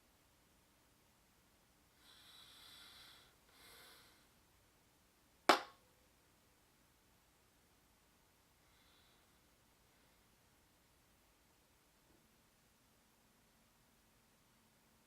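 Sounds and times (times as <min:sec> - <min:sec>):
soft breaths: 0:01.9 - 0:04.5, 0:08.3 - 0:11.3.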